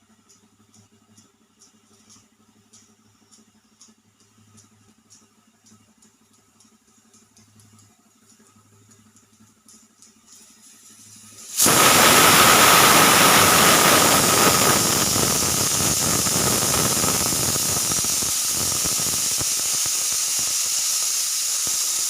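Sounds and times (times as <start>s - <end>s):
pressure cooker steam hissing: 10.3s - 22.0s.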